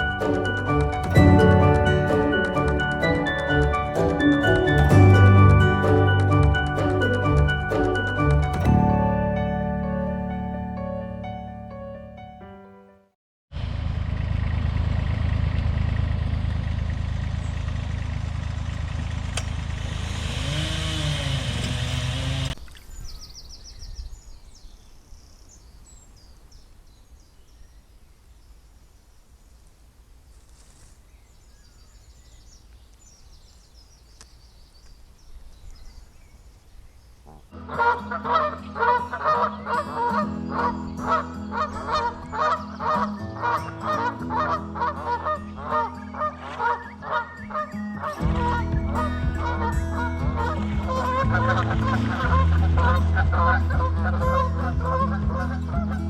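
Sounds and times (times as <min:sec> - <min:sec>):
loud low rumble: 0:13.5 - 0:22.4, 0:48.2 - 0:56.0
faint small birds chirping: 0:22.6 - 0:37.6
geese honking: 0:37.3 - 0:56.0.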